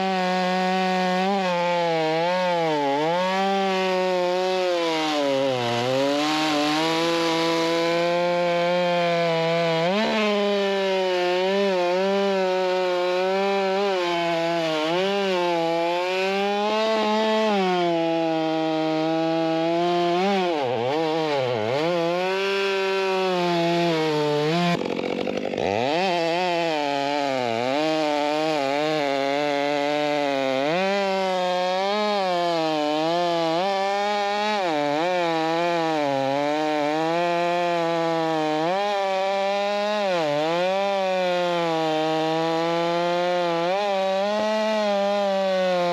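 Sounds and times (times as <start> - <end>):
chainsaw cutting wood: 0.0 - 45.9.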